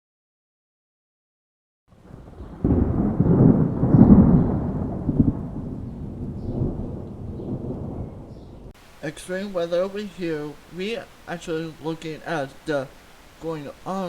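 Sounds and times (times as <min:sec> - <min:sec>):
thunder rumbling: 0:01.9 - 0:12.0.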